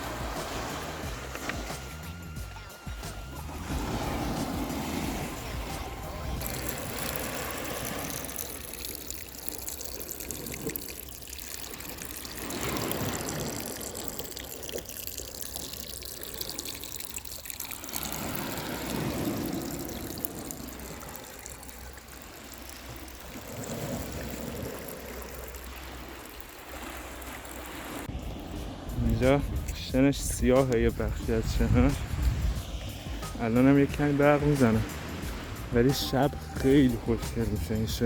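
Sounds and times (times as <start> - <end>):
sea water washing over shore: 0.0 - 38.0.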